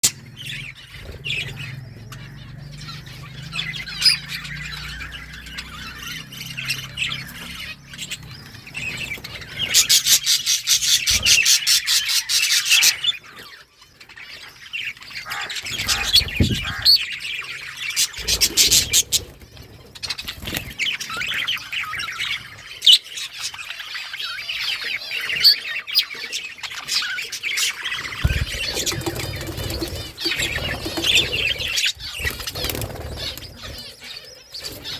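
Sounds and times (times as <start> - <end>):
flock of budgerigars chirping: 0.0 - 34.9
low thumps: 16.3 - 16.9, 28.2 - 31.1.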